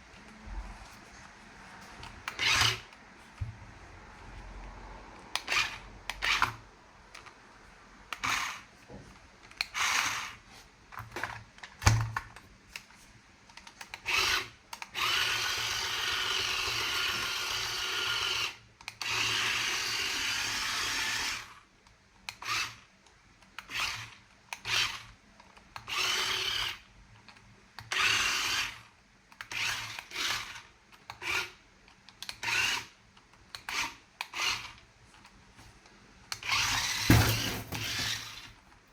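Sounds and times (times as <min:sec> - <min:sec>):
plastic rubbing and scraping: 0:37.0 - 0:38.4.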